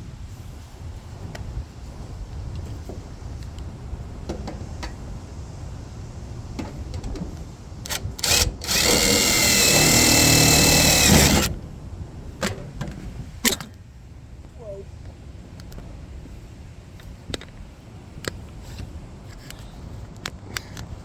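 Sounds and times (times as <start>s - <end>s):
sharp clicks: 7.8s - 11.5s
power drill whining: 7.9s - 11.5s.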